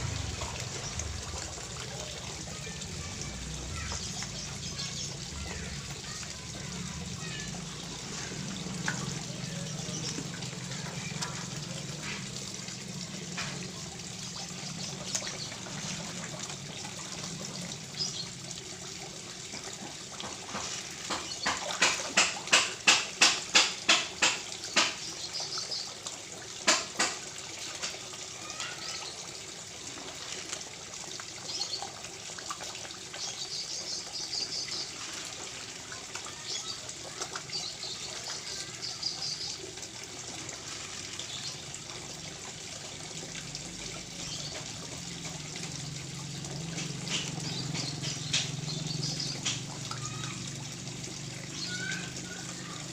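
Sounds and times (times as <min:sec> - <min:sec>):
running water: 0:00.0 - 0:52.9.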